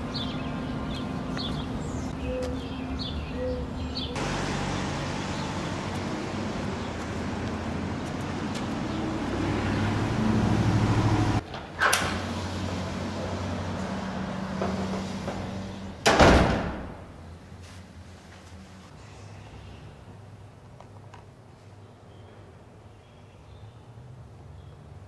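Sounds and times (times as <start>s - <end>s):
bird chirps: 0.0s - 4.2s
road traffic rumble: 0.0s - 25.0s.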